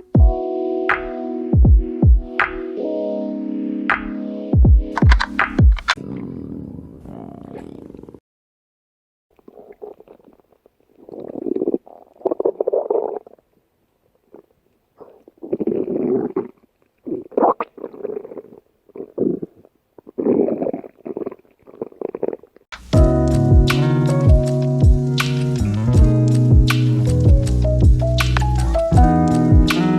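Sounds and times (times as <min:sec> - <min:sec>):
stomach rumbling and gurgling: 0:09.4 - 0:22.7.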